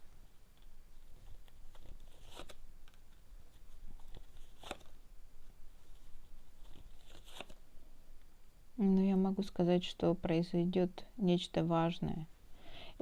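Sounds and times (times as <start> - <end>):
cards rustling: 0.6 - 5.0, 5.8 - 7.6.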